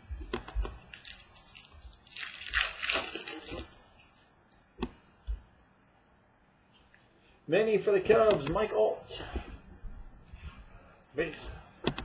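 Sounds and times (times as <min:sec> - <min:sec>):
wrapper crinkling: 0:00.9 - 0:03.7.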